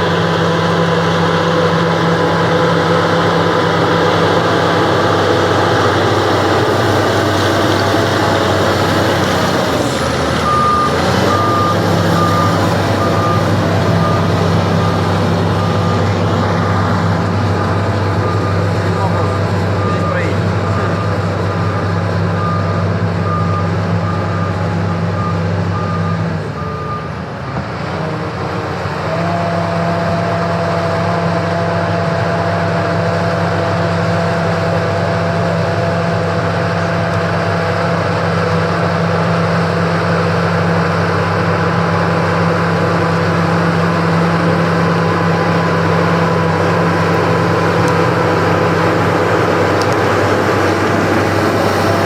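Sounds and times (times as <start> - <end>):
bulldozer diesel engine running: 0.0 - 52.0
reverse alarm beeping: 8.0 - 27.5.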